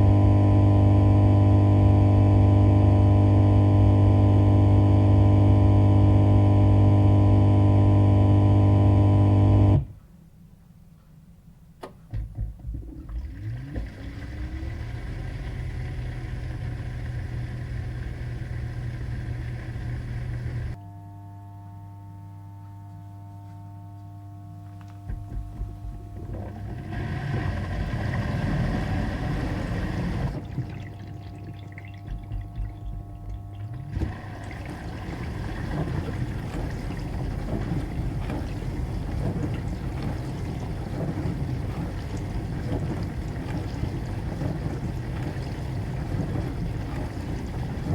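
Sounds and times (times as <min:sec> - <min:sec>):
motor spinning with rising whine: 0:00.0 - 0:09.9
loud steady electric hum: 0:00.0 - 0:10.0, 0:15.7 - 0:43.7
noisy running machines: 0:25.1 - 0:47.9.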